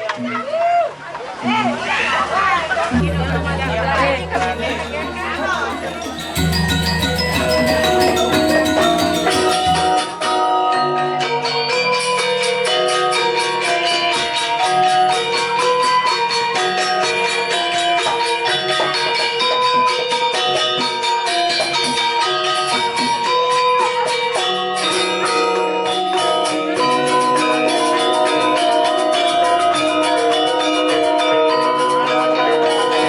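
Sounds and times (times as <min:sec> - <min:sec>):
quick tapping beat: 0:03.0 - 0:10.0
mallet percussion melody: 0:03.0 - 0:10.1.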